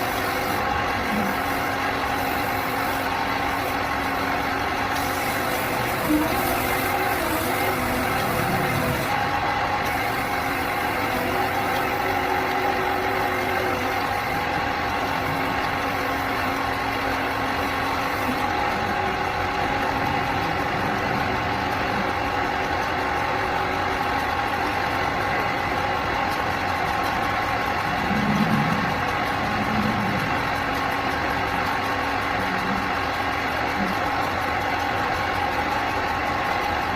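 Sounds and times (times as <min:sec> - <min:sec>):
engine running steadily: 0:00.0 - 0:36.9.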